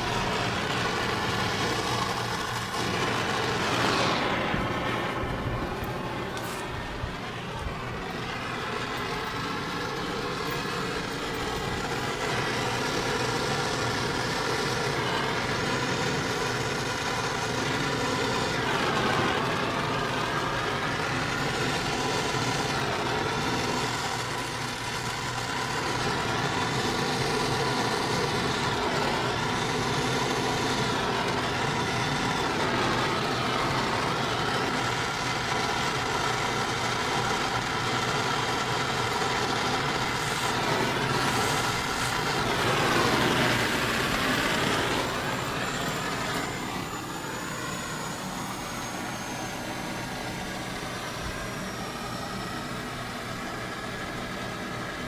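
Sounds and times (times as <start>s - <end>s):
motor running steadily: 0.0s - 55.0s.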